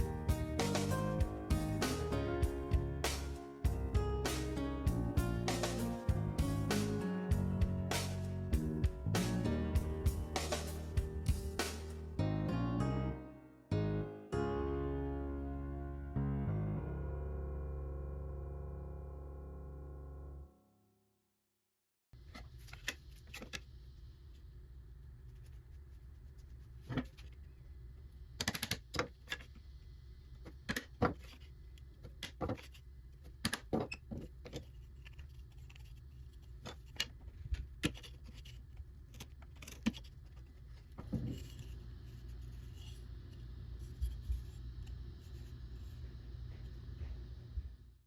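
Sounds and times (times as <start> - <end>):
steady low hum: 34.1 - 48.0.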